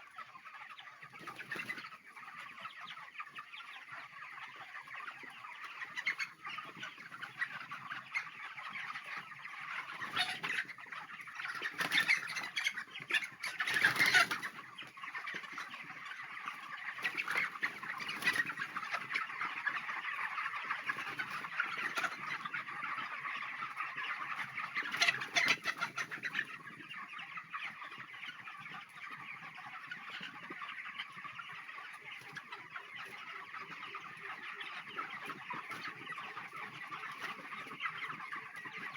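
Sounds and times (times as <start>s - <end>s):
chickens clucking and chirping: 0.0s - 38.9s.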